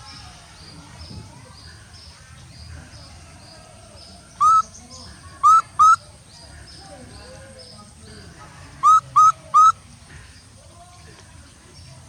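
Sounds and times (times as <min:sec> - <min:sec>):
squeaky animal calls: 0:04.4 - 0:04.6, 0:05.4 - 0:06.0, 0:08.8 - 0:09.8
faint high chirping: 0:04.4 - 0:06.1.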